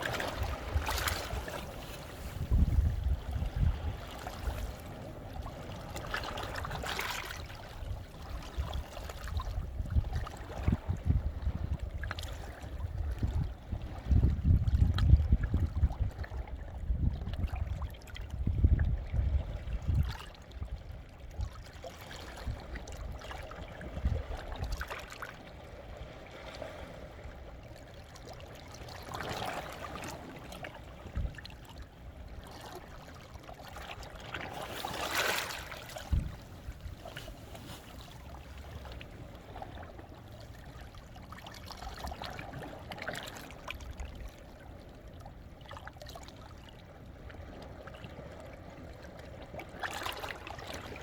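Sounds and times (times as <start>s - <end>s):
sea waves washing over rocks: 0.0s - 7.5s, 34.0s - 40.5s.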